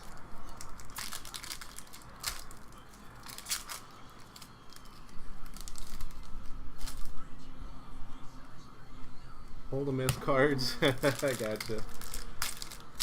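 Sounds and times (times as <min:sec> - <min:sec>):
card pack wrapper crinkling: 0:00.0 - 0:07.2, 0:10.9 - 0:13.0.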